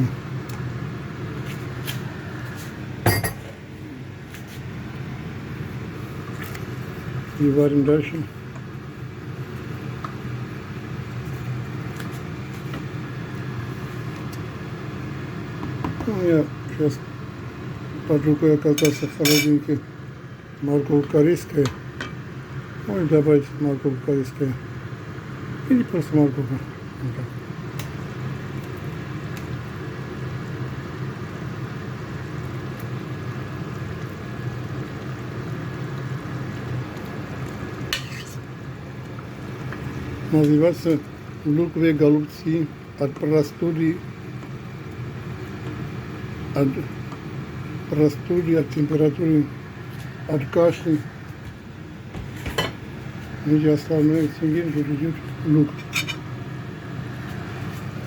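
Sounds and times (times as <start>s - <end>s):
low mechanical hum: 0.0s - 58.0s.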